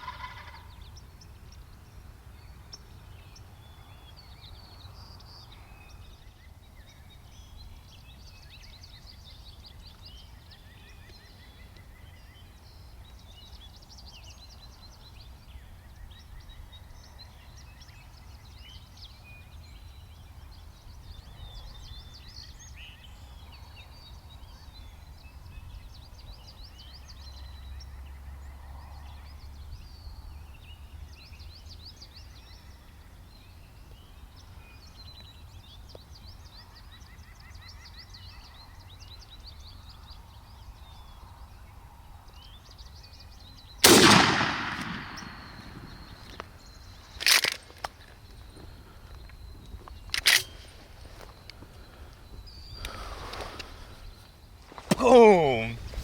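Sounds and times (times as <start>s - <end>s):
turkey gobbling: 0.0s - 0.7s
songbirds singing: 0.0s - 56.0s
low wind rumble: 43.8s - 47.1s, 55.8s - 56.0s.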